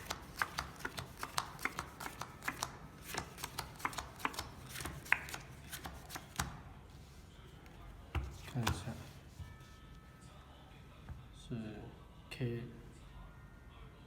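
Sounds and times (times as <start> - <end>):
playing cards snapping onto table: 0.0 - 6.5.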